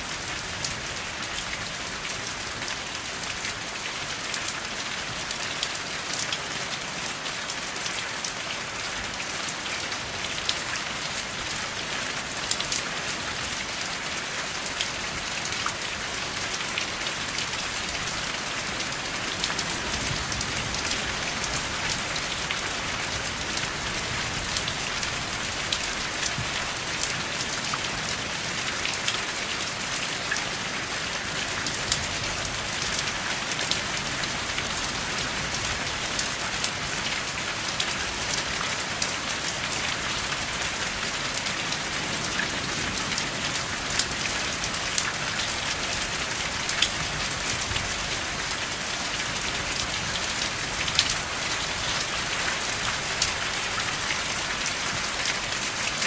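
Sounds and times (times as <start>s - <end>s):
steady rain with drops ticking: 0.0s - 56.0s.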